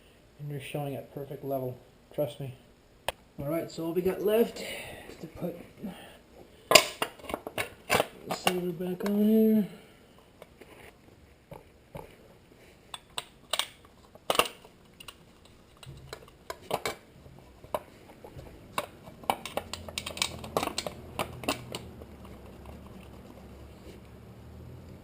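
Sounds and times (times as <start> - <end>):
faint low hum: 0.0 - 25.0
metal parts and tools clinking: 18.8 - 21.9.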